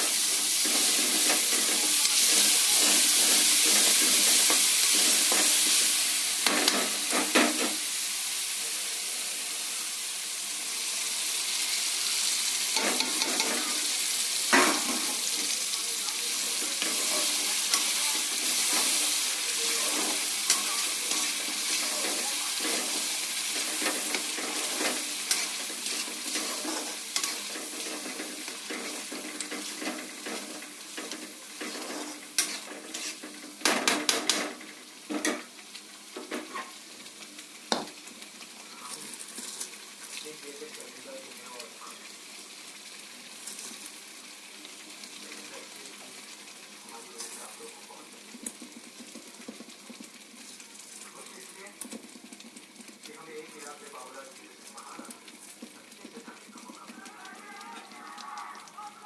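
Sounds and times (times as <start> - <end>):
food sizzling in a pan: 0.0 - 59.0
spoon scraping and knocking a pan: 0.6 - 7.8, 12.8 - 13.8, 16.6 - 35.5, 36.2 - 36.8, 48.3 - 50.6.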